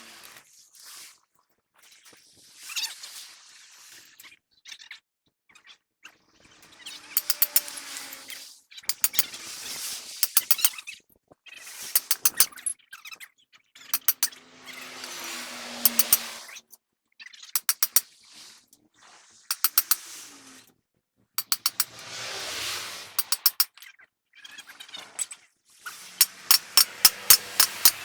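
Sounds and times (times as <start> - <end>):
hand tools clicking on metal: 7.2 - 7.8, 8.9 - 9.3, 10.2 - 10.7, 12.0 - 12.7, 14.0 - 14.4, 15.8 - 16.3, 17.6 - 18.0, 19.5 - 20.0, 21.4 - 22.0, 23.2 - 23.7, 26.2 - 28.0.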